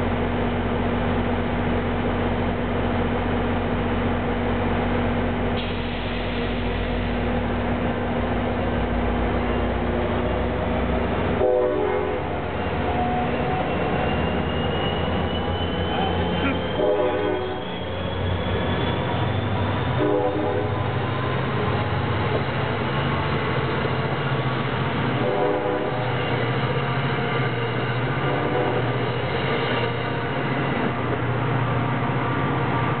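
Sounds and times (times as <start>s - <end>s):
diesel train running: 0.0s - 33.0s
train horn blasts: 11.4s - 13.3s, 16.4s - 17.6s, 19.9s - 21.0s, 25.2s - 26.2s, 28.2s - 29.0s.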